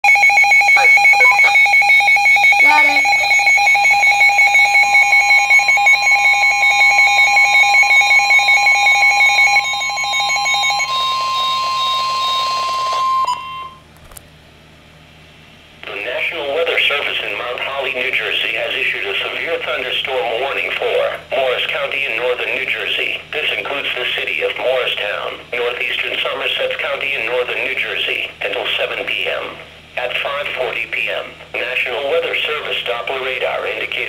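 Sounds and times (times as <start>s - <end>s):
rapidly pulsing electronic alarm: 0.0s - 13.8s
steady alert tone: 0.7s - 1.9s, 2.6s - 3.4s.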